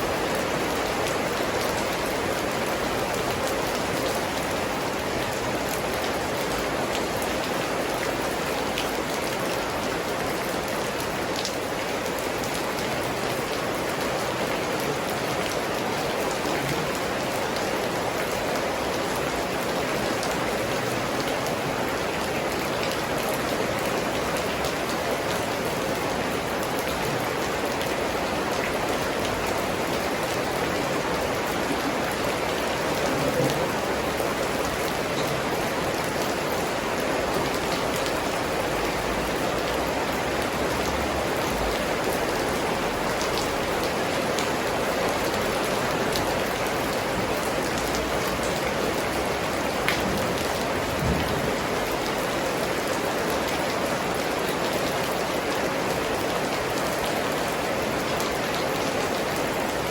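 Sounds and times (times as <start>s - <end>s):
raindrops ticking on surfaces: 0.0s - 59.9s
heavy rain hissing: 26.3s - 39.3s.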